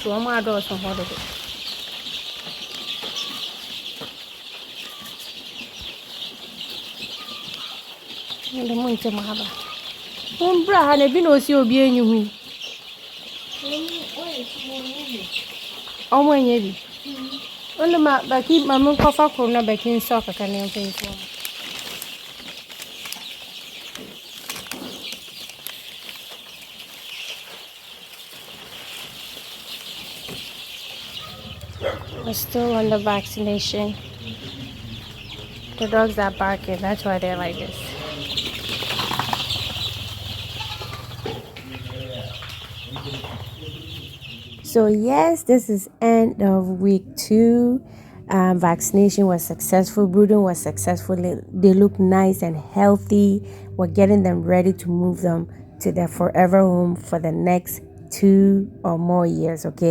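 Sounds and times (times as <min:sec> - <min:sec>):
chicks peeping: 0:00.0 - 0:59.9
rustles and wing flutters: 0:38.2 - 0:43.6.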